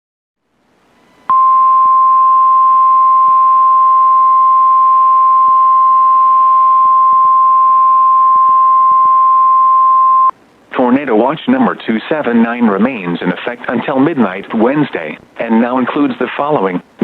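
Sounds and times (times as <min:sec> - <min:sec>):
faint radio static hiss: 0:00.4 - 0:01.4, 0:10.3 - 0:17.0
loud steady alarm beep: 0:01.3 - 0:10.3.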